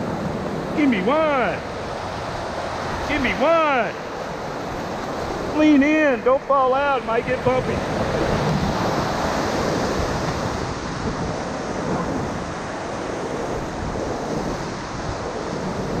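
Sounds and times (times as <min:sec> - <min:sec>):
whitewater rushing: 0:00.0 - 0:16.0.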